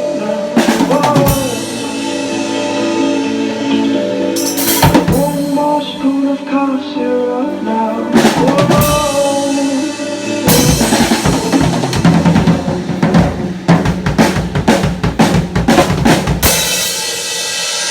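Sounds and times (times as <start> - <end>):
drum kit playing: 0.0 - 6.3, 8.1 - 17.9
rock song: 0.0 - 17.9.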